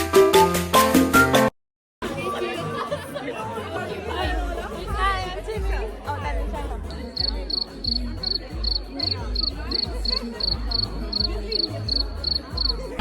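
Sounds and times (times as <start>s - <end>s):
music with deep bass beat: 4.3s - 13.0s
high-pitched pulsing chirping: 7.2s - 12.9s.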